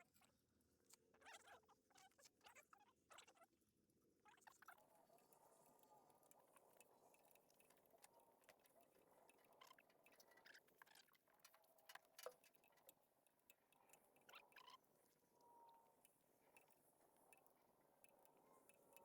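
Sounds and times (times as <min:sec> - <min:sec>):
faint light clicks and taps: 0:04.5 - 0:15.3, 0:15.9 - 0:19.0.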